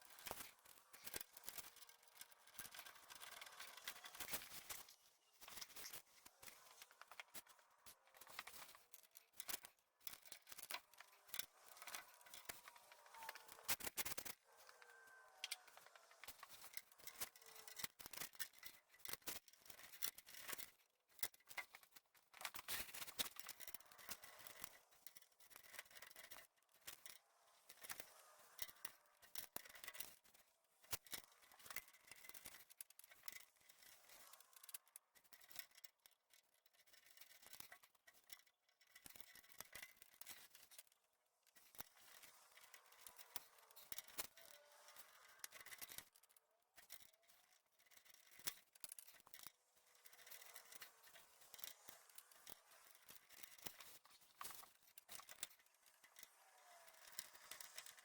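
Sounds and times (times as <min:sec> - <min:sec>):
faint irregular clicking: 0:00.0 - 0:58.0.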